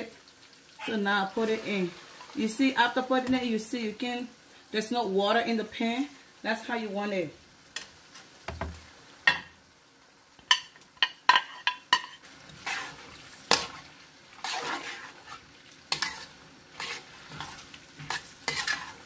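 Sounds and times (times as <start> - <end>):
light sizzle of frying: 0.0 - 19.0
spoon scraping pot: 11.3 - 13.8, 14.4 - 19.0.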